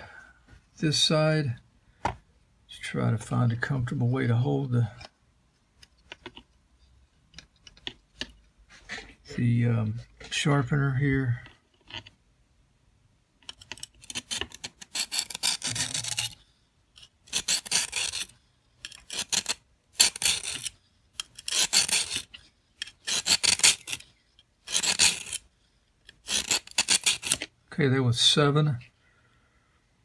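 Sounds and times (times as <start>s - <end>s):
knife rasping on sharpening stone: 14.0s - 16.4s, 17.0s - 24.1s, 24.7s - 25.5s, 26.2s - 27.5s.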